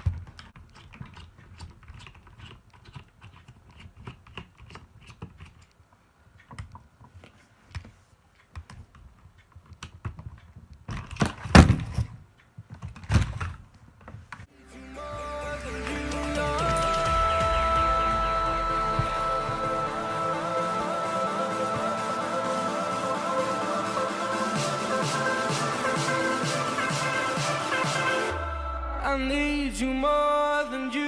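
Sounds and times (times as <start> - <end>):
music: 14.5 - 31.0.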